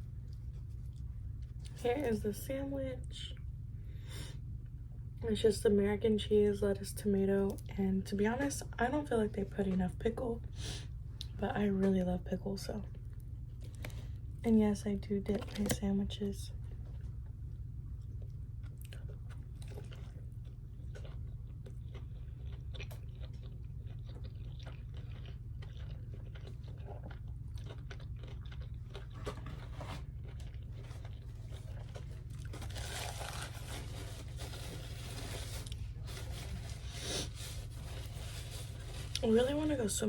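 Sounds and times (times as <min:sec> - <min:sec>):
crunchy chewing: 0:00.0 - 0:02.1, 0:16.5 - 0:39.3
steady low hum: 0:00.0 - 0:40.0.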